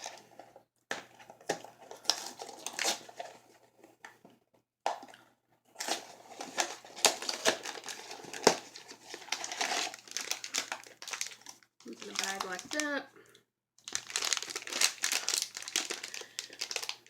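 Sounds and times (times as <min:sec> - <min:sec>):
plastic packaging crinkling: 0:00.0 - 0:03.5, 0:05.8 - 0:13.0, 0:13.8 - 0:17.0.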